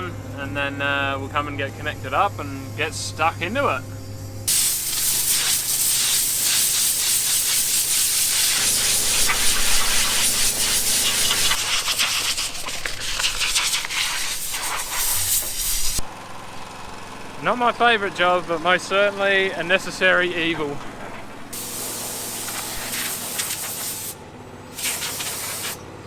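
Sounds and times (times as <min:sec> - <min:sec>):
compressed air blowgun hissing: 0:01.7 - 0:16.0, 0:21.6 - 0:25.8.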